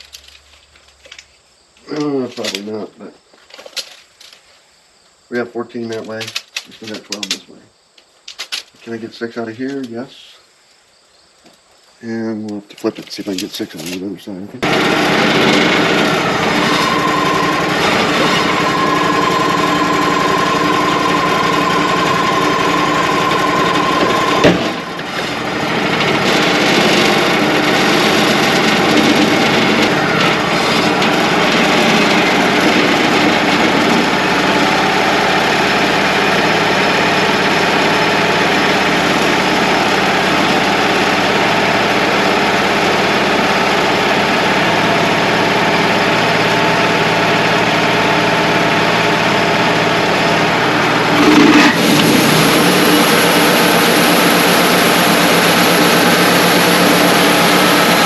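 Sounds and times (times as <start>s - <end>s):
steady whine: 13.0s - 58.0s
sawmill engine running: 14.6s - 58.0s.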